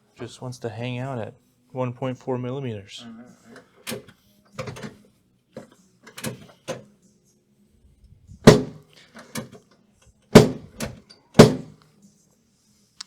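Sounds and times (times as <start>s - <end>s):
table drop section thudding: 8.5s - 8.8s, 10.4s - 11.8s.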